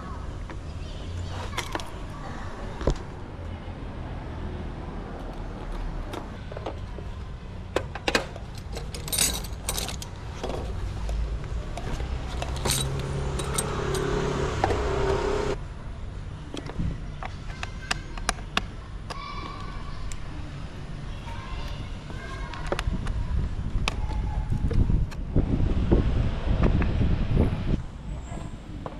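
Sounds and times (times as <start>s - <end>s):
loud mechanical hum: 6.4s - 17.0s
metallic clicks of tools and screws: 7.8s - 11.2s, 11.8s - 14.2s.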